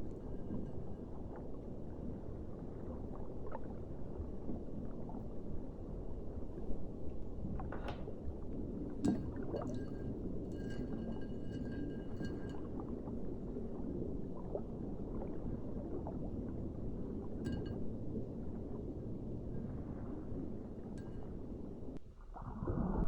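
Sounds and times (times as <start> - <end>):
faint glassy ringing tone: 0.0 - 2.4, 9.1 - 13.5, 17.5 - 18.6, 20.7 - 22.0.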